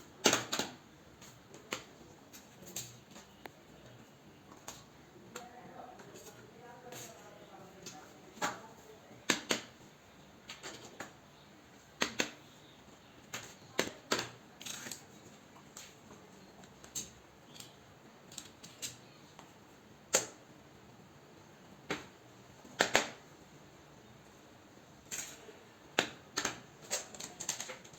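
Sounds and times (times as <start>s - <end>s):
small hard objects clicking: 16.6s - 19.1s, 26.0s - 27.9s.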